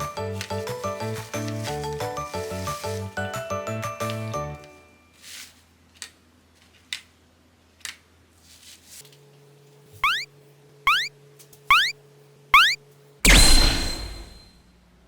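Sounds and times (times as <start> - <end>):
rising electronic chirp: 10.0 - 10.3, 10.9 - 11.1, 11.7 - 12.0, 12.6 - 14.4.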